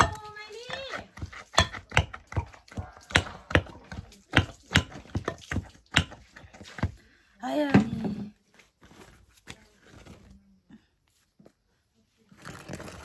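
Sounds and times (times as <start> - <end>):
hand pounding dough knocks: 0.0 - 7.0.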